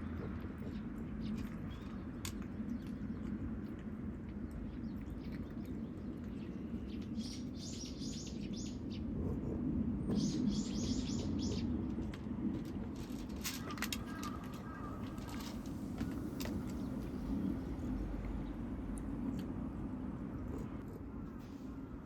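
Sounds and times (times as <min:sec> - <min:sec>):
low background hum: 0:00.0 - 0:22.0
small bird chirping: 0:10.1 - 0:11.7.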